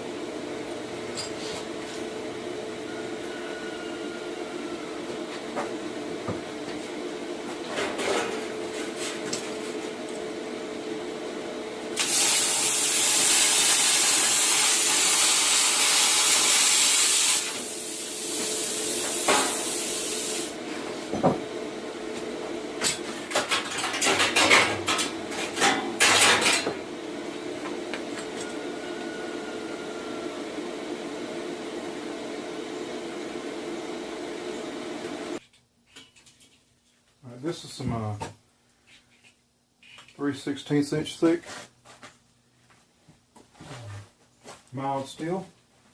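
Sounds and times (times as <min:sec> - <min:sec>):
steady hum: 0:00.0 - 0:14.8, 0:17.4 - 0:35.4
plasma cutter hissing: 0:12.0 - 0:20.6.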